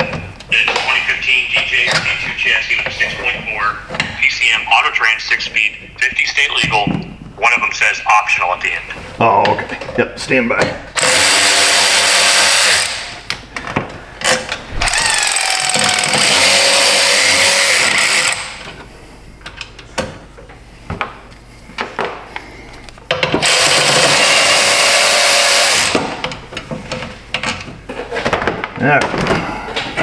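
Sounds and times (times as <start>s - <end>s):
handheld power tool running: 11.0s - 13.3s, 14.8s - 18.7s, 23.4s - 26.2s.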